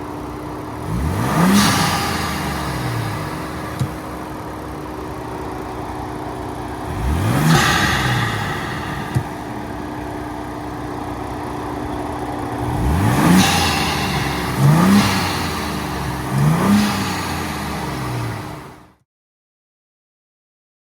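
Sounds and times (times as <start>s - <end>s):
car engine idling and revving: 0.0s - 19.0s.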